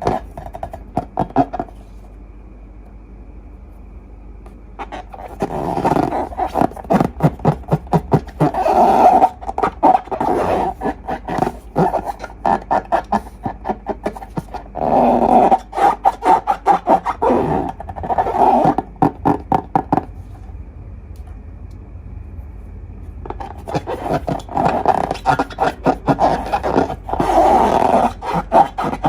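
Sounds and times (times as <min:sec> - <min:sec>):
rubbery squeaks and squelches: 0:00.0 - 0:01.9, 0:04.8 - 0:20.2, 0:23.3 - 0:29.0.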